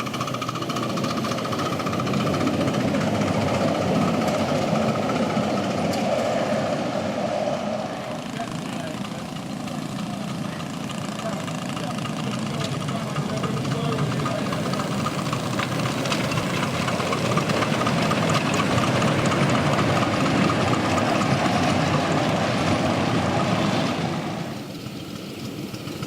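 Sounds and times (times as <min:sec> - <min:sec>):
miniature railway locomotive running: 0:00.0 - 0:26.0.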